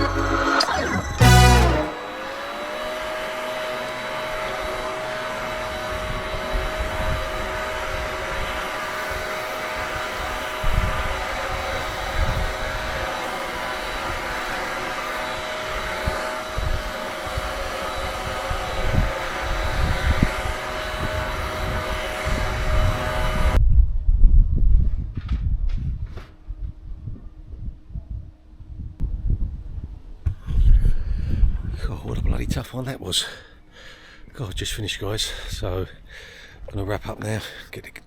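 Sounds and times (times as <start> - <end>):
small engine running: 0.0 - 23.6.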